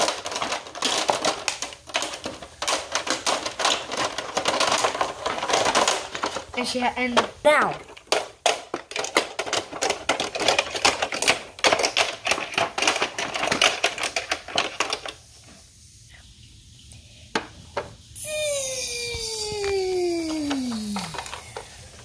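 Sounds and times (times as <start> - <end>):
rapid clicking and clattering: 0.0 - 15.2.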